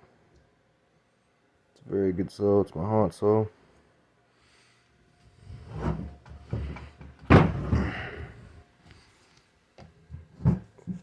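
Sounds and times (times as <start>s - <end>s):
handling clunks and rustling: 5.4s - 8.6s, 9.8s - 11.0s
loud thump: 7.3s - 8.0s.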